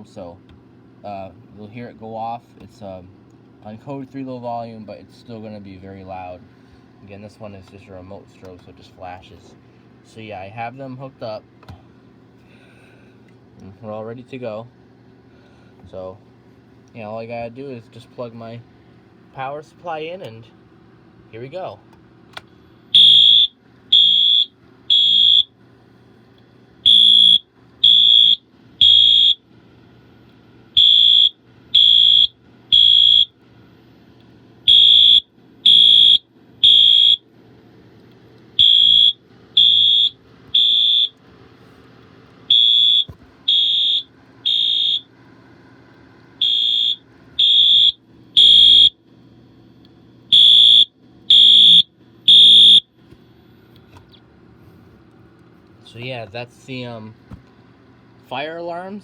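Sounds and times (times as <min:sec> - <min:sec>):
fire alarm horn blasts: 0:22.9 - 0:25.6, 0:26.8 - 0:29.5, 0:30.7 - 0:33.4, 0:34.6 - 0:37.2, 0:38.6 - 0:41.2, 0:42.5 - 0:45.2, 0:46.4 - 0:49.0, 0:50.3 - 0:52.9.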